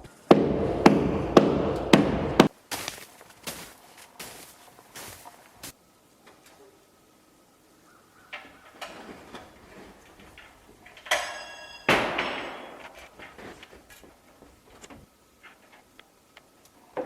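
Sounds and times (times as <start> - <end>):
knocks and taps of building work: 0.3 - 2.5
brief metallic ring: 11.1 - 12.0
heavy bang: 11.3 - 13.3.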